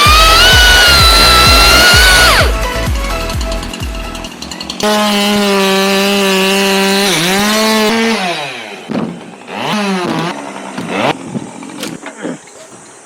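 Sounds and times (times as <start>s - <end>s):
chainsaw cutting wood: 0.0s - 13.0s.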